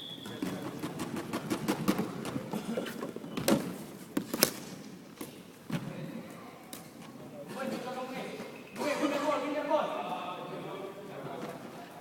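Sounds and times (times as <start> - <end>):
ball bouncing on indoor court: 0.0 - 2.6.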